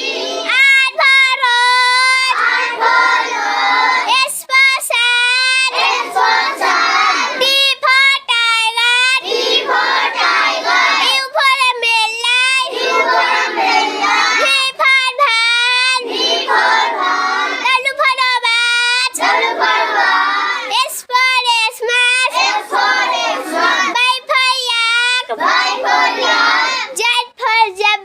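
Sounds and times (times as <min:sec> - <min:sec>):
several voices singing together: 0:00.0 - 0:07.5, 0:08.8 - 0:11.6, 0:12.2 - 0:14.7, 0:15.4 - 0:17.7, 0:19.1 - 0:20.7, 0:22.3 - 0:24.0, 0:25.2 - 0:27.0
child singing: 0:00.0 - 0:28.0.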